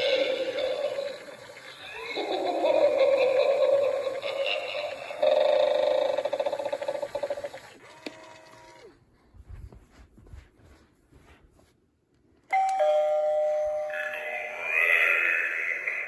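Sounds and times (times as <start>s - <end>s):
electronic doorbell chime: 12.5s - 14.8s.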